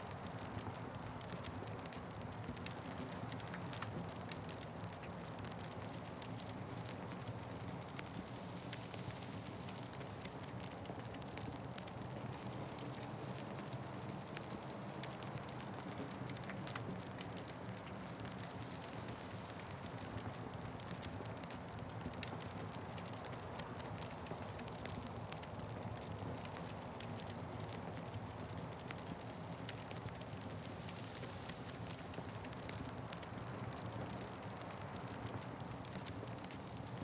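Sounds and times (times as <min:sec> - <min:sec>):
wood fire crackling: 0:00.2 - 0:37.0.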